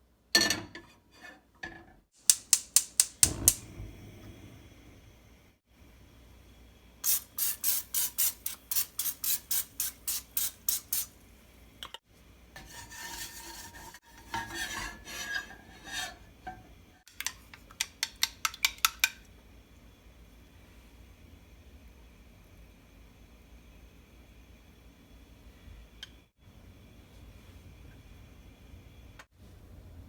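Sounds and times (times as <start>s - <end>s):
quick regular utensil strokes: 7.0s - 11.2s
utensil stirring and scraping: 12.6s - 16.2s.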